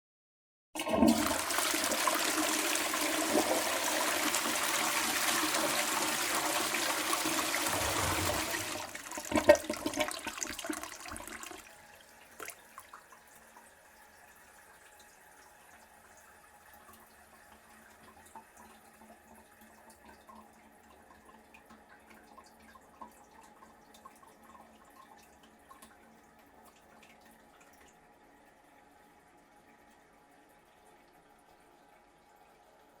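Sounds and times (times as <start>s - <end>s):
gurgling as bowl drains: 0.8s - 11.6s
toilet flushing: 0.8s - 13.1s
water dripping and trickling: 10.1s - 28.7s.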